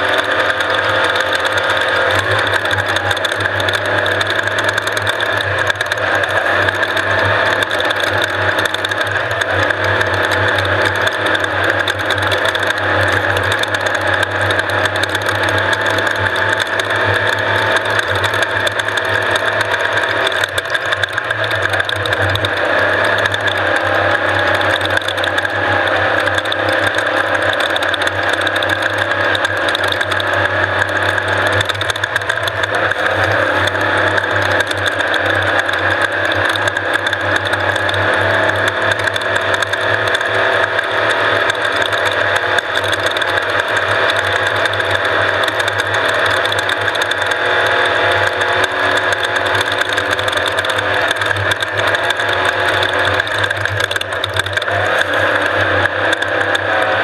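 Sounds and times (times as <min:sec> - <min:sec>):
dense mechanical rattle: 0:00.0 - 0:57.0
engine drone: 0:00.0 - 0:57.0.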